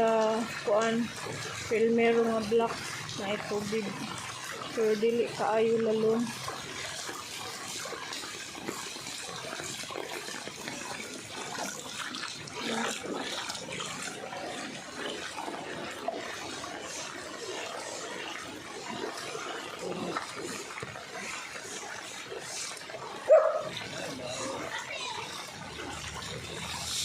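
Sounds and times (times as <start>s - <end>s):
floodwater splashing and sloshing: 0.0s - 27.0s.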